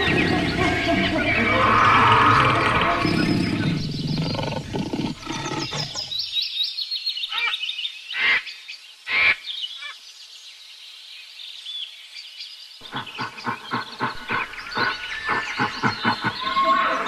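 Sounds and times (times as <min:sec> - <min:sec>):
deep rumbling animal sound: 0:00.0 - 0:06.2, 0:12.8 - 0:17.0
loud animal calls: 0:00.0 - 0:06.2, 0:12.8 - 0:17.0
high bird chirps: 0:00.0 - 0:06.6, 0:12.8 - 0:17.0.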